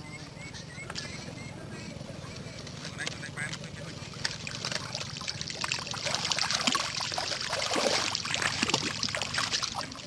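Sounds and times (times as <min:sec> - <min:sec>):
water trickling and splashing: 0:02.9 - 0:10.0.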